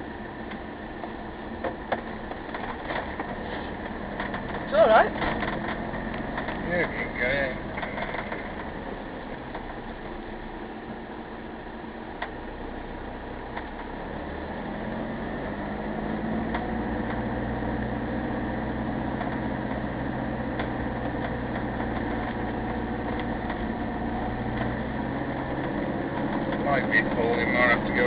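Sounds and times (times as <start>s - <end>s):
vehicle engine from inside cabin: 0.0s - 28.0s.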